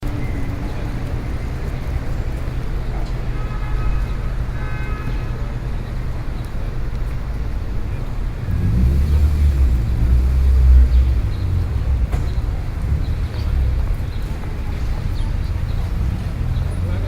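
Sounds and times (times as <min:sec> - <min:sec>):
road vehicles rumbling: 0:00.0 - 0:17.0
heavy vehicle passing: 0:06.6 - 0:17.0.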